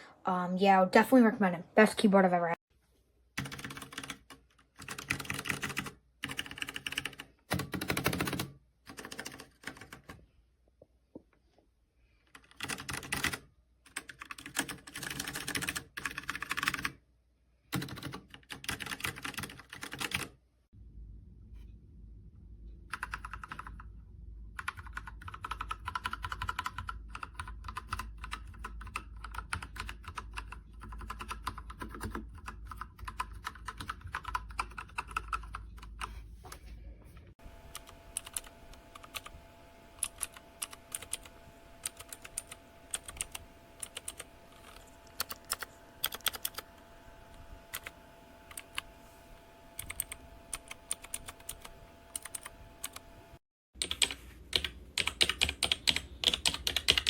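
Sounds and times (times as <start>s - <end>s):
low hum: 20.8s - 23.0s, 36.2s - 53.4s.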